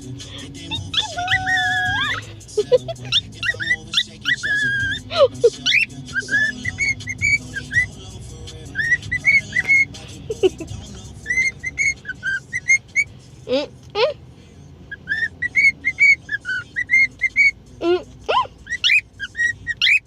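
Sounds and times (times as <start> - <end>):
parrot whistling: 0.7 - 8.0, 8.7 - 10.0, 11.2 - 13.1, 14.9 - 17.6, 18.3 - 20.0.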